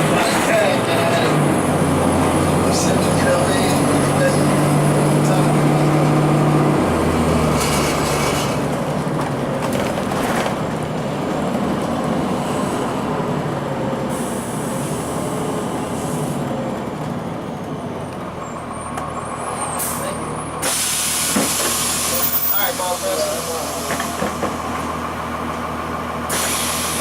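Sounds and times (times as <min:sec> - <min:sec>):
diesel bus engine running: 0:00.0 - 0:27.0
road noise: 0:00.0 - 0:27.0.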